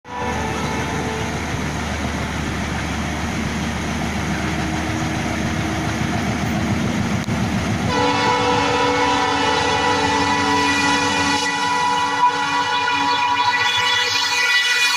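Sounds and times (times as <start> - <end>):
locomotive horn blast: 0.1 - 1.4, 7.9 - 14.9
train rolling rumble: 0.1 - 14.9.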